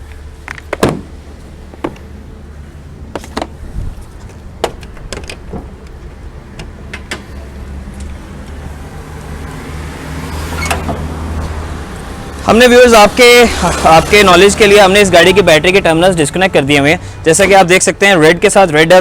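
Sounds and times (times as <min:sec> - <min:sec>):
sharp clicks and knocks: 0:04.2 - 0:06.0, 0:06.6 - 0:08.2.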